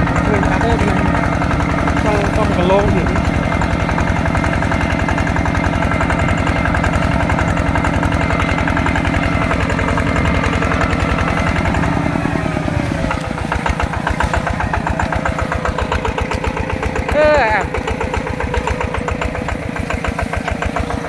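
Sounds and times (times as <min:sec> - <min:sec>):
diesel tractor engine chugging: 0:00.0 - 0:21.0.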